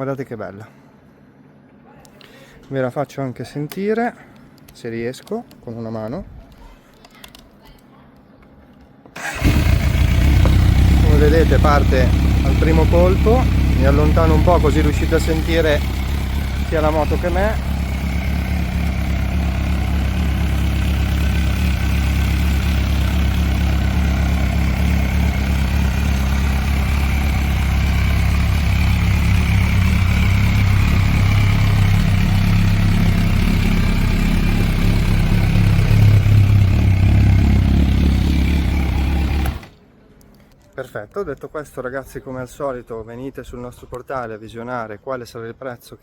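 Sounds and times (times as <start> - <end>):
motorcycle engine idling: 9.2 - 39.7.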